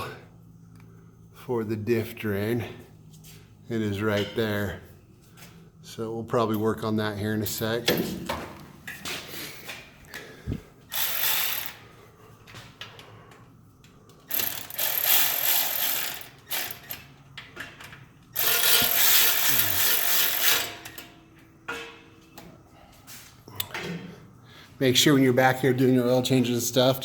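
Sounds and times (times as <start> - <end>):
ratchet wrench working: 10.9 - 11.9, 14.2 - 17.1, 18.3 - 21.1.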